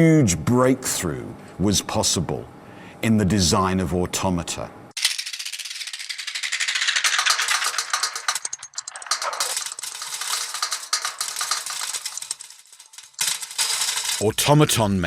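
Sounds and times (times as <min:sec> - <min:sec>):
clockwork clicking and whirring: 0:05.0 - 0:15.0.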